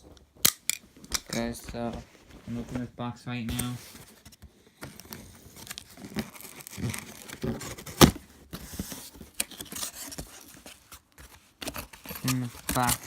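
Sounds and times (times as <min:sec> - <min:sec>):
cardboard tearing and crinkling: 0:03.5 - 0:13.0.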